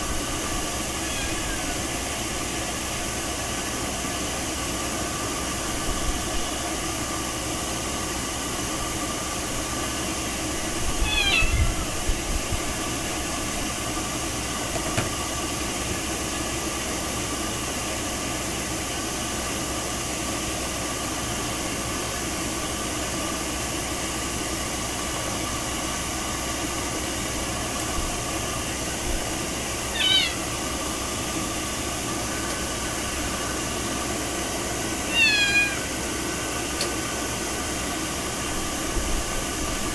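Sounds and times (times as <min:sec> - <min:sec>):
cat meowing: 0:00.7 - 0:02.2, 0:10.9 - 0:12.0, 0:29.9 - 0:30.5, 0:35.0 - 0:36.0.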